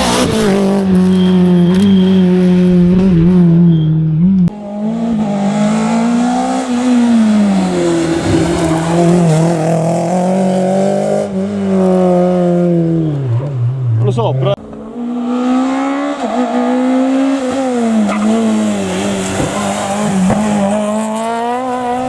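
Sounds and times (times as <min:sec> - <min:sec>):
rally car engine revving: 0:00.0 - 0:22.0
tyre noise: 0:17.3 - 0:22.0.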